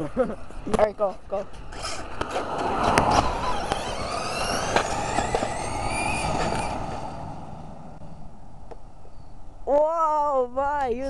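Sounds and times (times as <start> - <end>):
road and wind noise: 0.0 - 11.0
electric car motor whine: 1.5 - 9.4.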